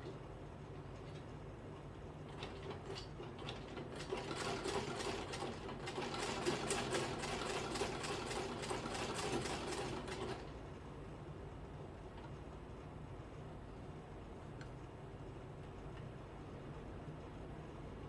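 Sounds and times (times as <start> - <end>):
sewing machine stitching: 2.4 - 10.5.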